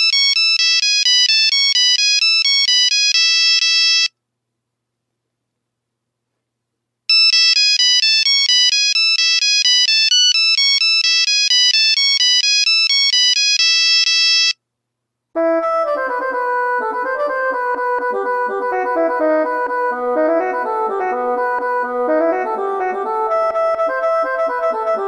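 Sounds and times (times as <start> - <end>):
polyphonic ringtone tune: 7.1 - 14.6, 16.0 - 25.0.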